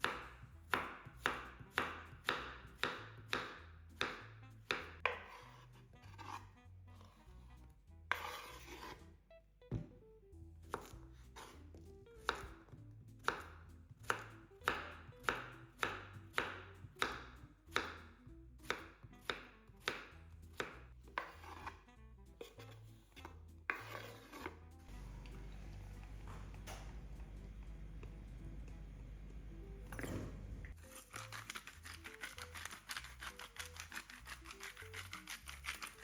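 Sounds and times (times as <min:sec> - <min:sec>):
knife chopping on cutting board: 0:00.0 - 0:07.1, 0:08.1 - 0:09.0, 0:10.6 - 0:21.8, 0:22.4 - 0:24.6, 0:29.9 - 0:36.0
soft background music: 0:00.0 - 0:36.0.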